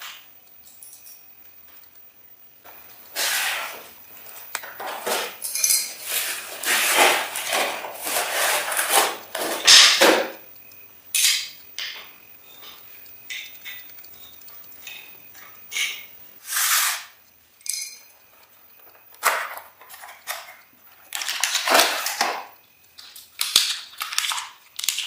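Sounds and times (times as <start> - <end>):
objects scraping and clinking: 2.7 - 10.3, 12.6 - 25.0.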